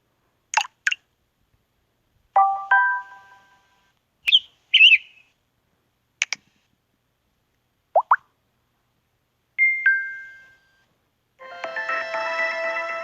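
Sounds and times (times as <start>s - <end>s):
high chirps: 4.2s - 5.3s.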